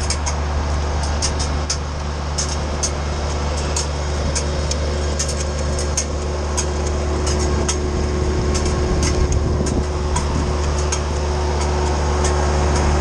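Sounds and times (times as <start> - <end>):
tractor engine drone: 0.0 - 13.0
wood chipper hum: 0.0 - 13.0.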